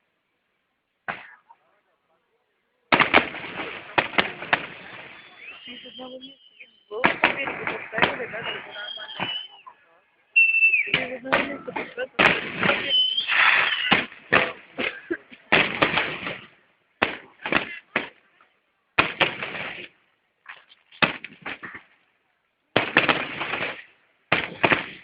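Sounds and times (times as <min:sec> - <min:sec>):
fireworks bangs and crackling: 0:02.9 - 0:09.7, 0:10.4 - 0:18.3, 0:19.0 - 0:20.0, 0:21.0 - 0:22.0, 0:22.7 - 0:25.0.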